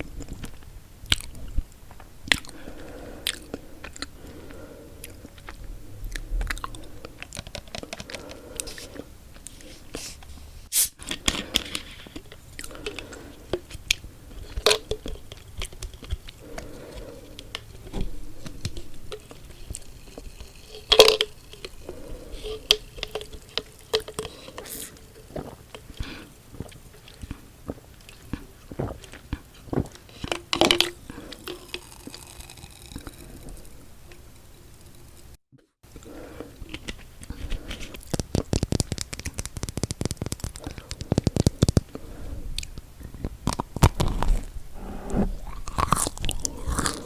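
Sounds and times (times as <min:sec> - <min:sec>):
chewing with wet mouth sounds: 0:00.0 - 0:09.6, 0:11.1 - 0:33.8, 0:45.4 - 0:47.0.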